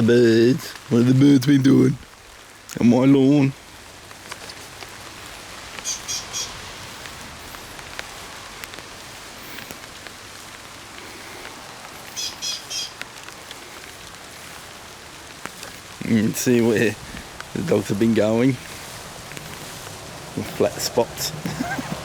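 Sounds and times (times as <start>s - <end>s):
steady rain falling: 0.0s - 22.0s
bird short high calls: 5.8s - 6.7s, 12.1s - 13.0s.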